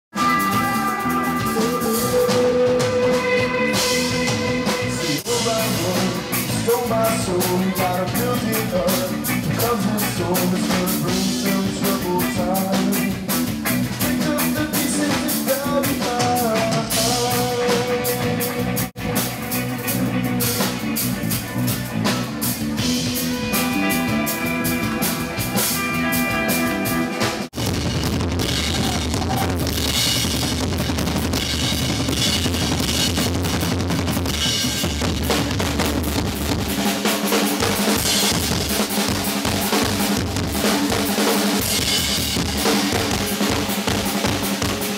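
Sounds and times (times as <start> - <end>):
drums and crashing cymbals: 0.1 - 44.9
rock band playing: 0.1 - 44.9.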